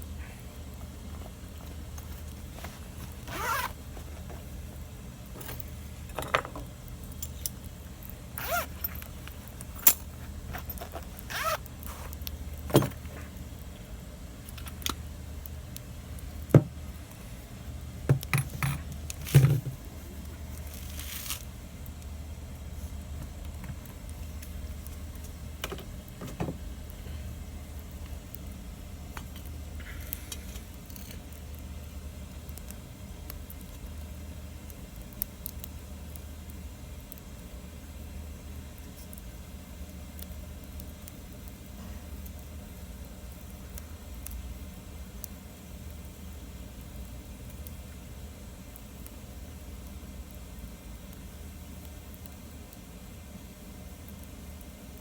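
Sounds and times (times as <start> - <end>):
wood fire crackling and popping: 0.0 - 55.0.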